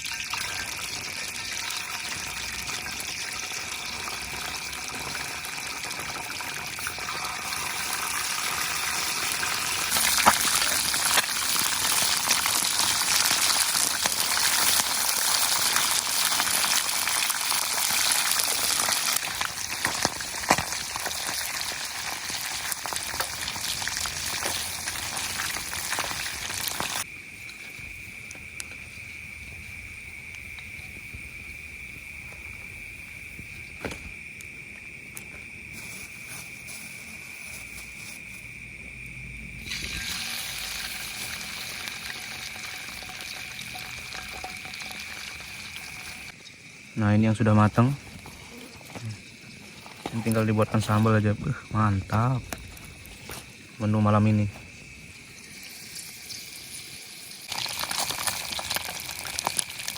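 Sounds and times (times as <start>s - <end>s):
crickets droning: 0.0s - 59.9s
rushing hiss of liquid: 39.6s - 46.4s.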